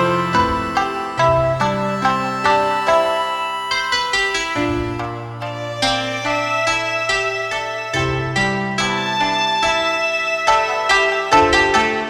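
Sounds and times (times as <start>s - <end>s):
instrumental background music: 0.0s - 12.0s.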